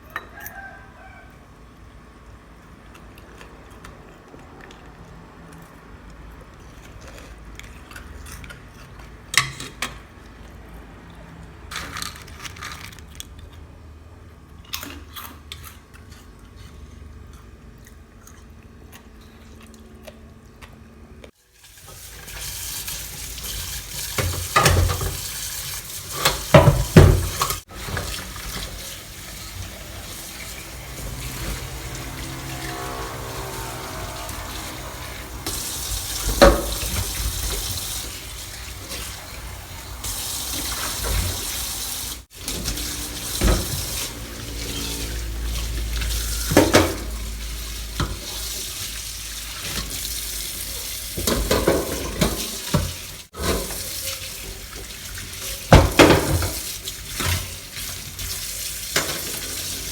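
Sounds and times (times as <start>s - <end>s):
water running: 21.6s - 59.9s
dishes and pans clattering: 23.4s - 25.4s, 26.1s - 39.4s, 46.2s - 47.2s, 50.8s - 54.8s, 55.4s - 57.6s, 58.9s - 59.9s
dishes and utensils clinking: 23.5s - 25.3s.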